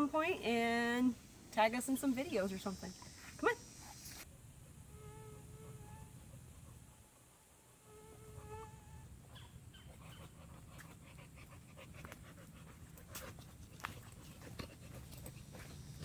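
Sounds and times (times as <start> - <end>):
dog panting: 9.2 - 16.0.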